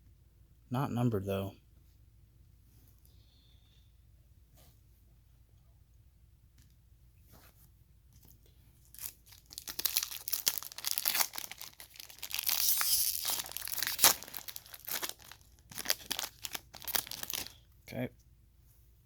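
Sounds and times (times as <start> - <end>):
plastic wrapper tearing and crinkling: 8.8 - 17.6.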